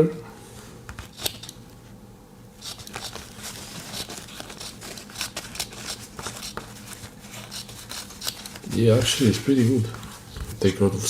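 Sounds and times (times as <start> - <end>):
paper crinkling: 2.6 - 11.0
scissors snipping: 7.5 - 8.6.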